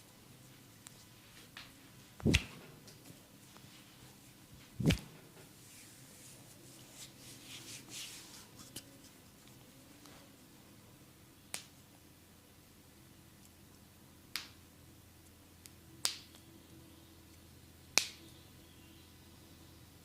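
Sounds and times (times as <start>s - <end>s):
faint low hum: 0.0s - 20.0s
hands snapping: 2.2s - 2.6s, 4.8s - 5.1s, 11.5s - 11.7s, 14.3s - 14.6s, 15.6s - 16.4s, 18.0s - 18.2s.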